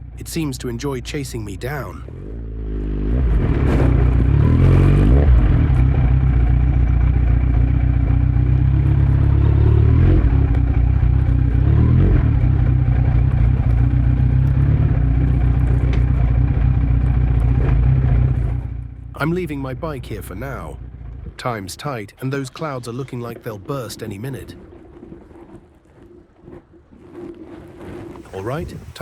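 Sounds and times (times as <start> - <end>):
motorcycle engine revving: 2.0 - 21.4.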